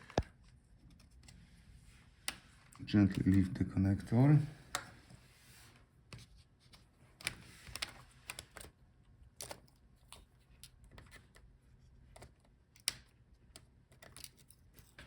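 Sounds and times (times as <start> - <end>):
plastic parts clicking and tapping: 7.1 - 15.0.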